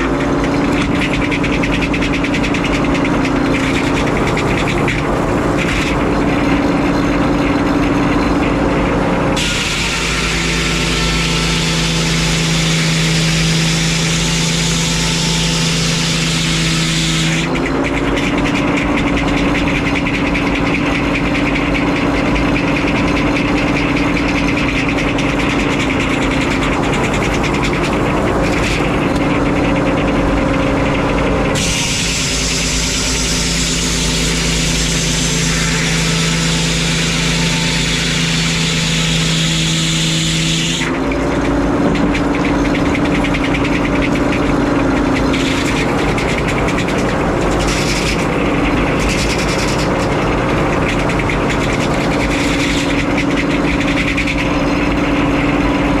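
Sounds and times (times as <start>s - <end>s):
saw blade cutting log: 0.0s - 56.0s
sawmill engine drone: 0.0s - 56.0s.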